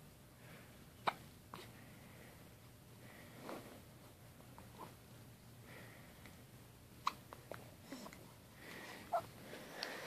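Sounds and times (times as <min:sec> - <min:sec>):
baby hiccuping: 0:01.0 - 0:01.7, 0:07.0 - 0:07.2.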